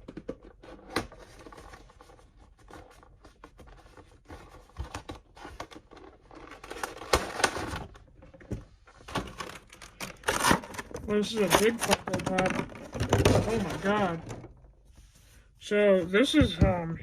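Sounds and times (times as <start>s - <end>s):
cardboard and plastic packaging rustling: 0.0s - 16.9s.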